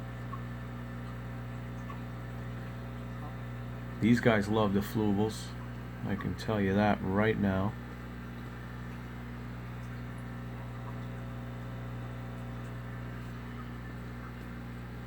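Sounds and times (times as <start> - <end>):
aquarium filter hum: 0.0 - 15.0.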